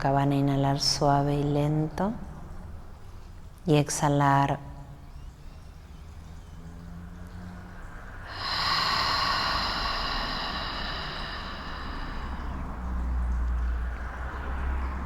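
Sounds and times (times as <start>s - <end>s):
woman exhaling through mouth: 8.2s - 13.0s.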